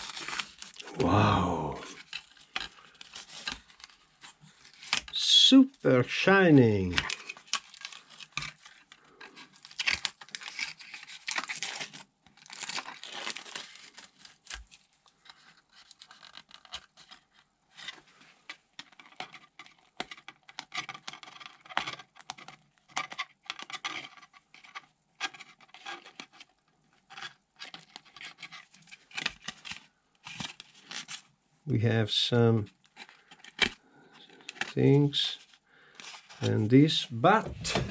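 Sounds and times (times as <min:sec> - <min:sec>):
plastic film crinkling: 0:00.0 - 0:00.9, 0:06.8 - 0:17.2
plastic film peeling and crackling: 0:00.0 - 0:00.9, 0:07.0 - 0:18.0.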